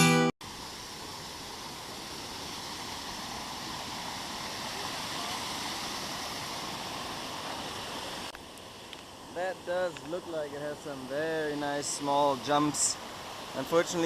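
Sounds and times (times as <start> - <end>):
acoustic guitar music: 0.0 - 0.3
waterfall rushing: 0.4 - 14.0.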